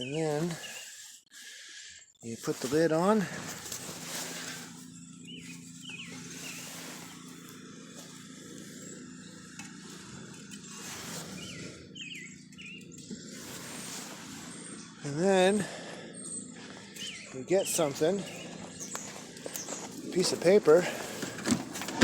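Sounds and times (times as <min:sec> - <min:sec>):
steady low hum: 0:00.2 - 0:22.0
small bird chirping: 0:04.0 - 0:20.3.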